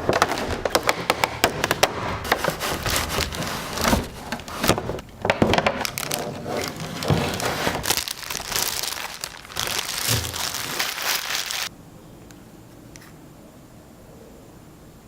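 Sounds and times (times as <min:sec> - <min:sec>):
packaging crinkling and crackling: 0:00.0 - 0:11.7.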